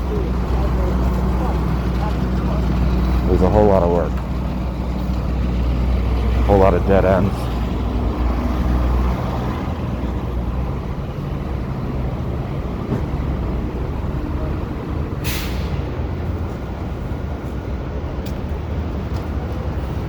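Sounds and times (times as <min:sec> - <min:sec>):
city street traffic rumble: 0:00.0 - 0:20.0
brief sharp hiss: 0:15.2 - 0:15.8.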